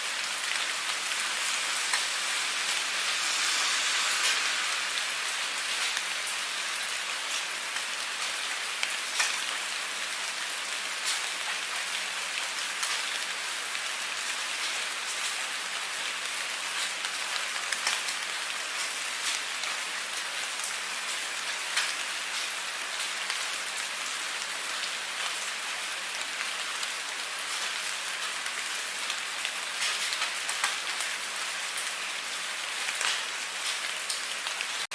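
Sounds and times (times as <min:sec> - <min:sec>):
steady rain hiss: 0:00.0 - 0:34.9
raindrop ticks: 0:08.8 - 0:09.5, 0:17.7 - 0:18.2.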